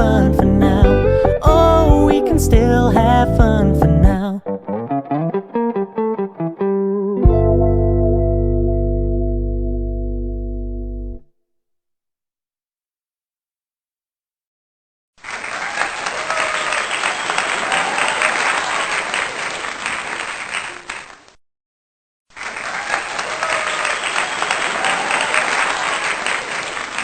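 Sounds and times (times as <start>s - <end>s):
faint cheers: 15.2s - 21.1s, 22.4s - 27.0s
crowd applauding: 15.2s - 21.3s, 22.3s - 27.0s.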